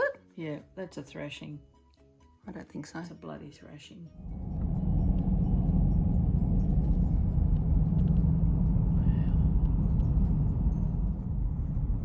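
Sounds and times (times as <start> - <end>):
car road rumble: 4.2 - 12.0.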